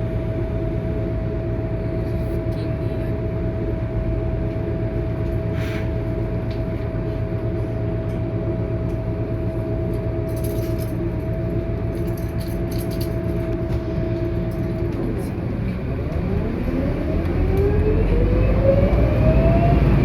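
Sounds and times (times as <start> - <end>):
bus engine droning: 0.0 - 20.0
transmission whine: 10.0 - 20.0.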